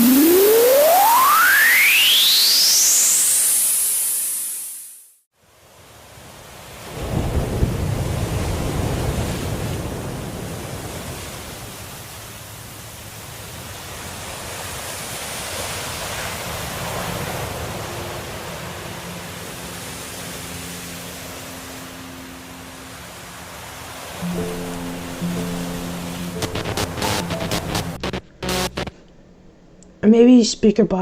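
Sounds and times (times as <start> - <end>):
faint held musical notes: 17.8 - 28.9
steady rushing hiss: 24.2 - 28.9.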